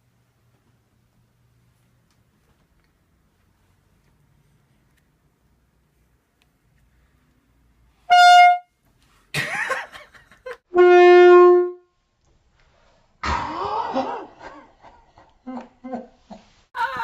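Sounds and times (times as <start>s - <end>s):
air horn blasts: 8.0s - 8.7s, 10.7s - 11.8s
person crying out: 13.3s - 14.3s.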